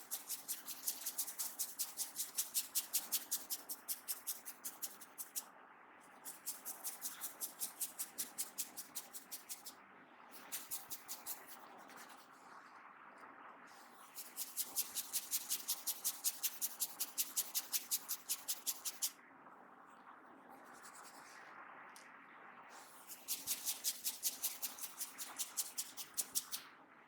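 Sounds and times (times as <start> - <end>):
fingers scratching hair: 0.0 - 5.4, 6.2 - 9.7, 10.4 - 12.2, 14.1 - 19.1, 22.8 - 26.6
soft hair rustling: 0.0 - 5.4, 6.2 - 9.7, 10.4 - 12.3, 13.8 - 19.1, 22.7 - 26.6.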